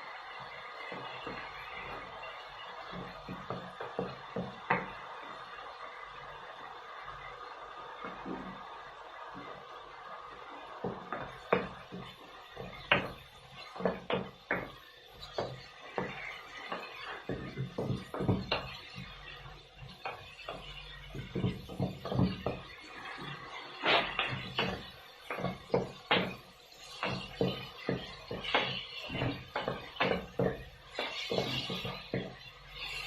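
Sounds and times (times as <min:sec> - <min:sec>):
spatula scraping a wok: 0:11.4 - 0:33.0
crayfish shells clacking on pan: 0:20.0 - 0:33.0.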